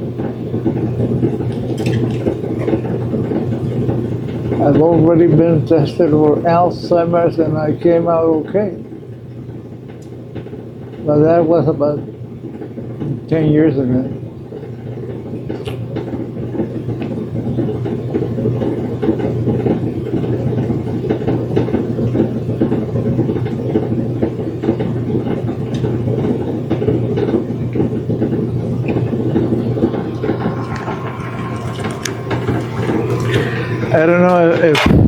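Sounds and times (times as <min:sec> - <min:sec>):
machine rumbling and whirring: 0:14.2 - 0:35.0.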